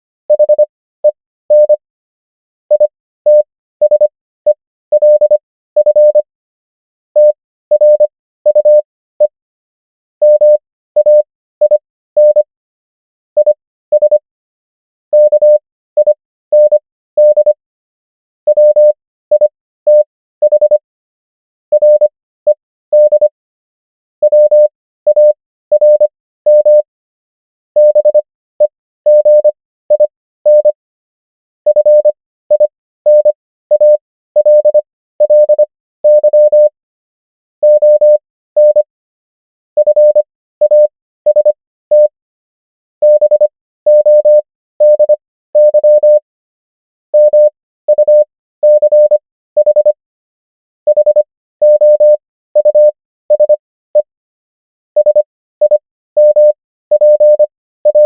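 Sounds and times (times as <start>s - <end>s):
morse code beeps: 0.3s - 1.8s, 2.7s - 6.2s, 7.2s - 9.4s, 10.2s - 12.5s, 13.4s - 14.2s, 15.2s - 17.6s, 18.5s - 20.8s, 21.7s - 23.3s, 24.2s - 26.9s, 27.8s - 30.8s, 31.7s - 36.7s, 37.6s - 38.9s, 39.8s - 42.2s, 43.0s - 46.2s, 47.2s - 50.0s, 50.9s - 54.1s, 55.0s - 58.0s.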